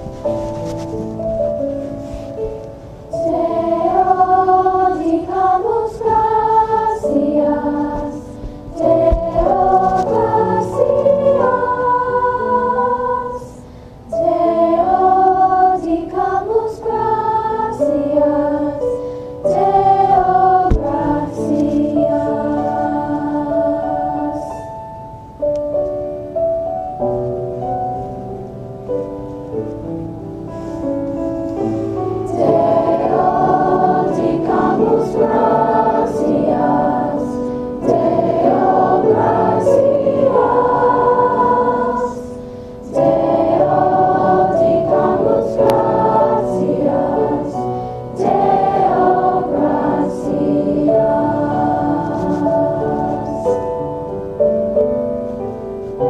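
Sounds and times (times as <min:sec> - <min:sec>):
choir singing muffled: 0:00.0 - 0:25.0, 0:31.5 - 0:54.5.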